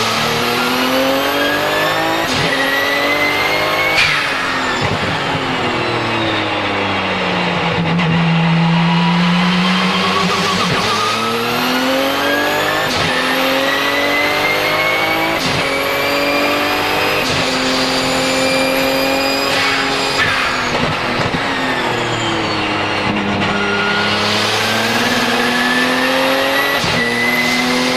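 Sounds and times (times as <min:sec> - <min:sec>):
car engine accelerating: 0:00.0 - 0:27.9
high turbo whistle: 0:01.6 - 0:07.3, 0:17.1 - 0:27.9.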